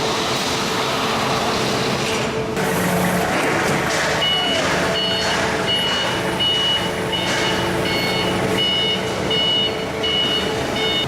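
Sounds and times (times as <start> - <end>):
factory machinery hum: 0.0 - 11.0
electronic warning beeps: 4.2 - 11.0.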